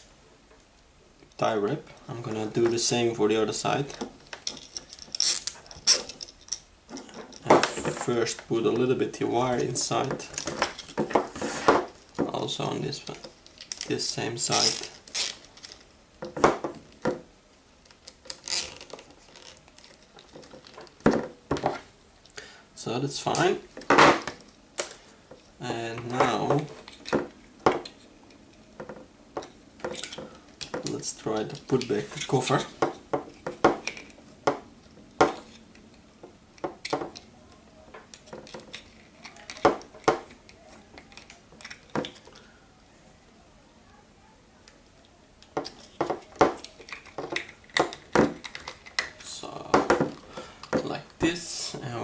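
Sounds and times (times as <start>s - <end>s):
rustling scrapes: 10.3s - 12.1s
plastic parts clicking: 17.8s - 22.4s, 26.2s - 36.0s, 37.9s - 42.5s, 44.6s - 51.0s
plastic cover clicks and knocks: 45.5s - 49.1s.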